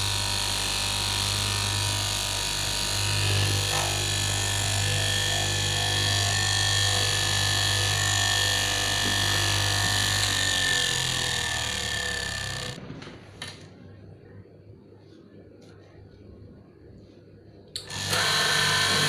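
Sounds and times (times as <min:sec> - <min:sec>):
electric motor humming: 0:00.0 - 0:12.8, 0:17.8 - 0:19.0
motor winding down: 0:00.0 - 0:12.8, 0:17.8 - 0:19.0.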